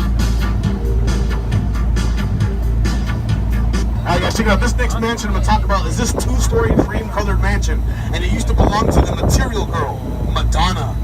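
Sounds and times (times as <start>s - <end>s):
electronic dance music: 0.0s - 10.9s
constant low rumble: 0.0s - 11.0s.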